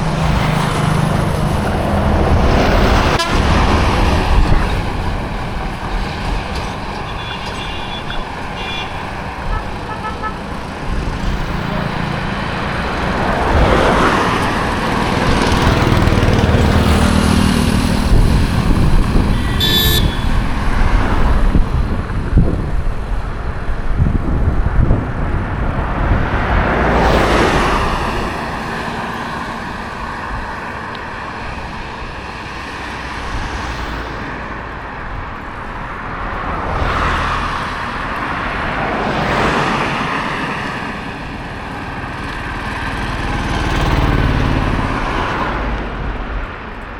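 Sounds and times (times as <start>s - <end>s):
road traffic passing: 0.0s - 46.9s
high horn beep: 3.0s - 3.6s, 19.2s - 20.6s.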